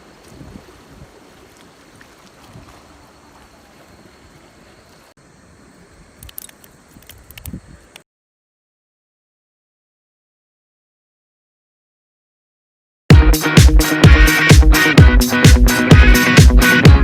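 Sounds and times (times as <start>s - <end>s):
wind on microphone: 0.0s - 1.3s, 6.0s - 8.0s
water lapping: 0.0s - 5.2s.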